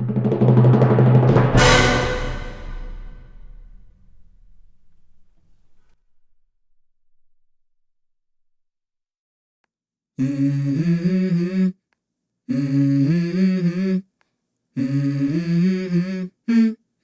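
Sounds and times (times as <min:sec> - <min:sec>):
hummed vocal melody: 0:10.2 - 0:11.8, 0:12.5 - 0:14.0, 0:14.8 - 0:16.8.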